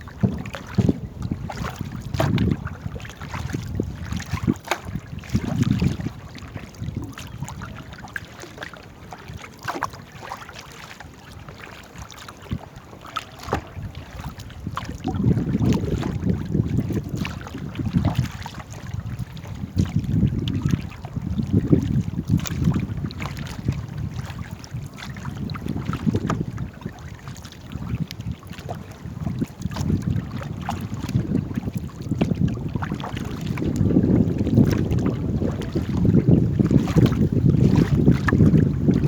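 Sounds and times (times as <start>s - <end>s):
wind buffeting microphone: 0.0s - 10.3s, 11.3s - 39.0s
paddles splashing water: 0.0s - 39.0s.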